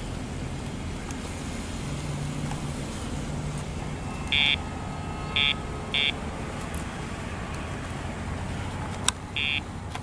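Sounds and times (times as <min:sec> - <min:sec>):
short electronic buzz: 0:04.0 - 0:04.6.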